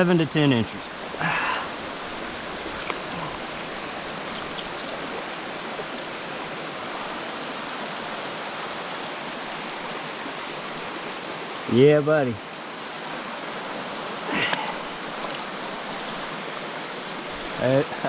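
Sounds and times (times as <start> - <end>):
stream rushing over stones: 0.0 - 18.0
water swish: 0.1 - 8.2, 14.6 - 17.7.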